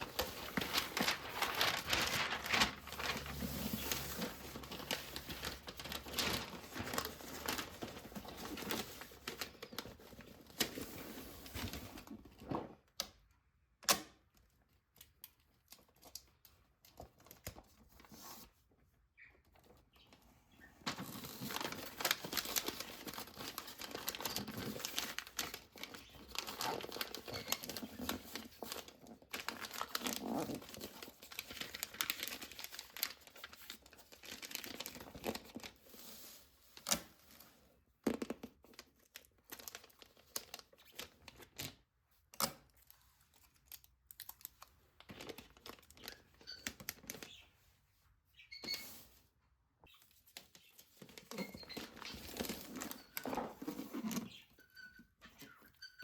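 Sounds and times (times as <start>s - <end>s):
packaging crinkling: 0.0s - 11.7s, 20.9s - 37.4s, 38.7s - 41.7s.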